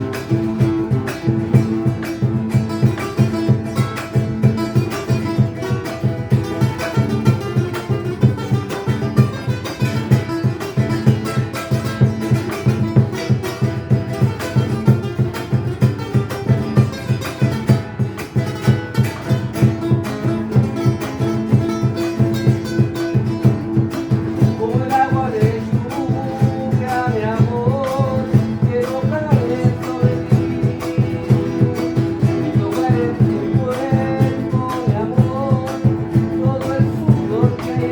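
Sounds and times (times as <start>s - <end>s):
guitar strumming rhythm: 0.0s - 37.9s
person singing: 23.7s - 37.9s.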